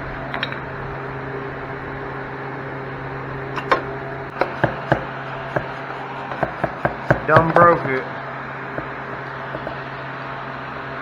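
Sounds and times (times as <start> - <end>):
tools clicking and knocking: 3.6 - 8.0, 8.8 - 9.8.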